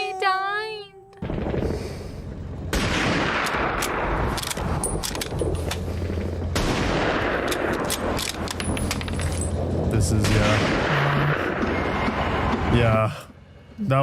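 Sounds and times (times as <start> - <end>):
sharp single gunshots: 2.7 - 4.2, 10.2 - 12.3
machine-gun and rifle fire: 2.7 - 8.8.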